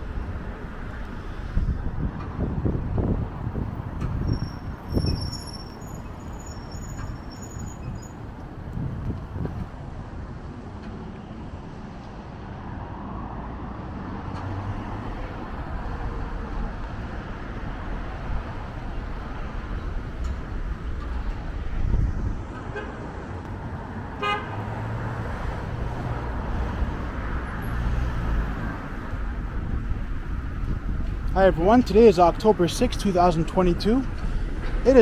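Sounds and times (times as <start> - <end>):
cars passing: 0.0 - 35.0
wind thumps on microphone: 1.5 - 5.3, 8.6 - 9.8, 19.5 - 22.6, 28.5 - 31.4.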